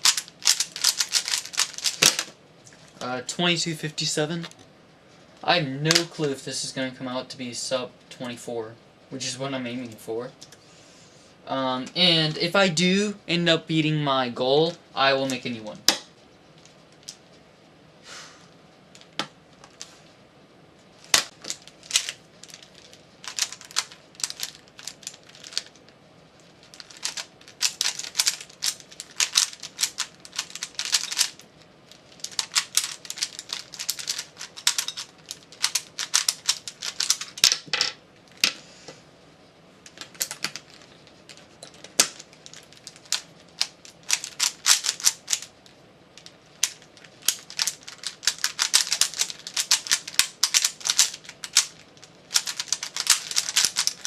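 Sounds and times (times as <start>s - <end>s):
puzzle cube plastic clicking: 0.0s - 2.3s, 26.7s - 31.4s, 32.2s - 37.4s, 46.2s - 54.0s.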